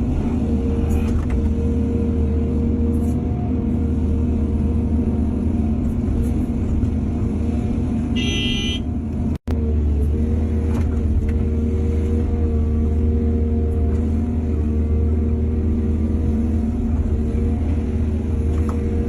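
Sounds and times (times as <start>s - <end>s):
excavator diesel engine rumbling: 0.0s - 19.0s.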